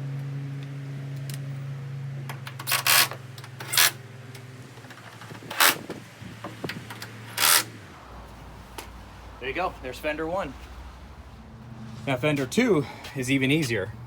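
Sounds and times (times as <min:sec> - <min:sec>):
low hum: 0:00.0 - 0:14.0
power driver tightening screws: 0:02.5 - 0:04.0, 0:05.1 - 0:06.0, 0:06.9 - 0:07.8.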